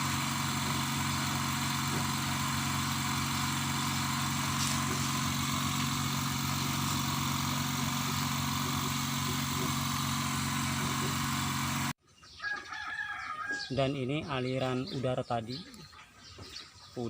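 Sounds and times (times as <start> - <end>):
air compressor humming and hissing: 0.0 - 12.0.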